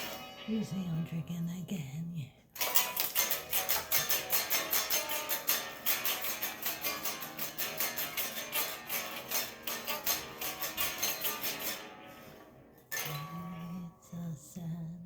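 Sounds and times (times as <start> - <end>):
guitar strummed quickly: 2.6 - 13.6.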